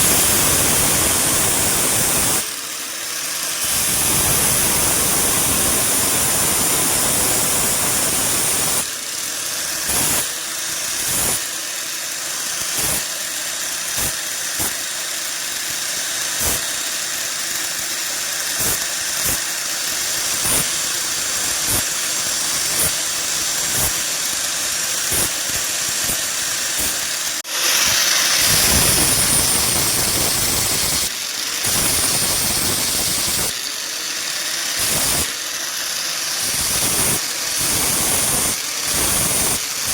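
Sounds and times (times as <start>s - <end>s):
metalworking power tool running: 0.0s - 39.9s.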